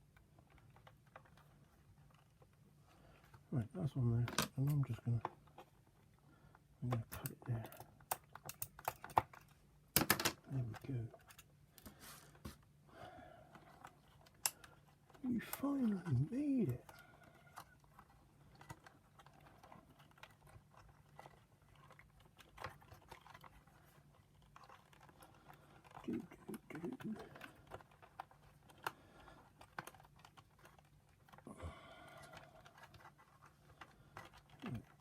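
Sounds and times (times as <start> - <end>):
plastic parts clicking and tapping: 4.1 - 12.6, 13.5 - 15.9, 16.6 - 35.0
faint hum: 10.4 - 35.0.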